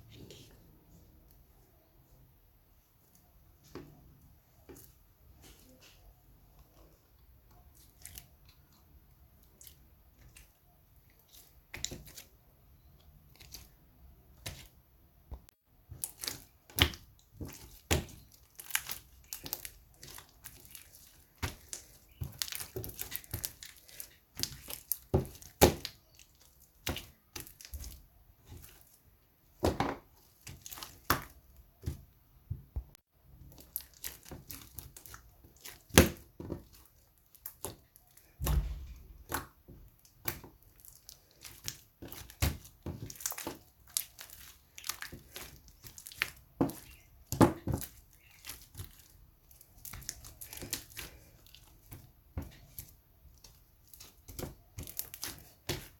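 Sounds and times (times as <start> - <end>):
slime crackling and popping: 15.9 - 29.0, 33.5 - 55.9.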